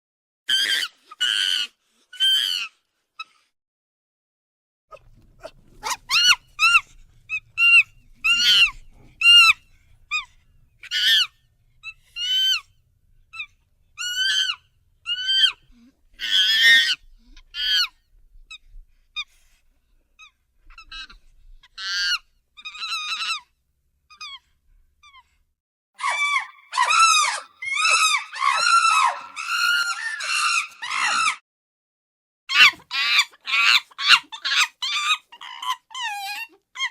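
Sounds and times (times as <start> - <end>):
ape hooting calls: 26.0 - 31.4.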